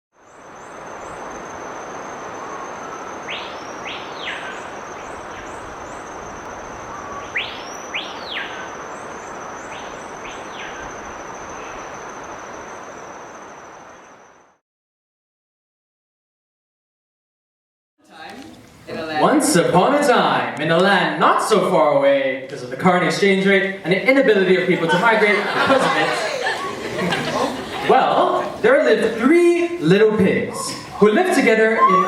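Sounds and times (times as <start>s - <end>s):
bird whistling calls: 1.0s - 11.9s, 30.4s - 32.0s.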